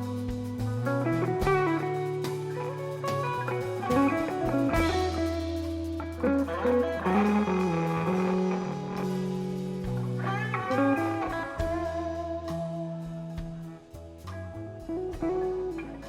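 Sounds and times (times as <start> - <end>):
bass notes: 0.0 - 16.0
drum kit: 0.0 - 16.0
electric guitar: 0.0 - 16.0.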